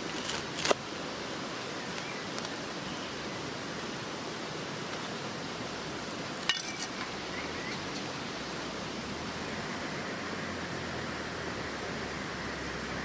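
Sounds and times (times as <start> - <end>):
steady rushing hiss: 0.0 - 13.0
sharp clink: 6.5 - 7.0.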